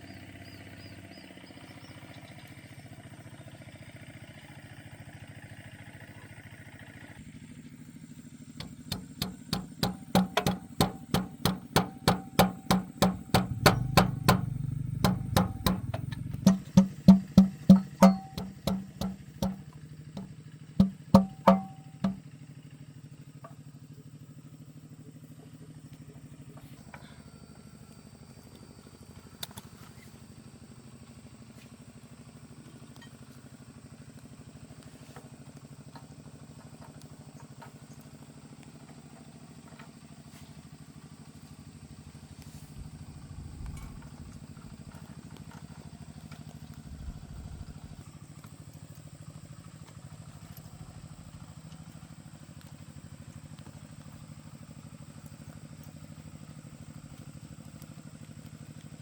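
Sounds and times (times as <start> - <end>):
low mechanical hum: 7.1 - 59.0
sharp knock: 8.6 - 19.6, 20.2 - 22.2.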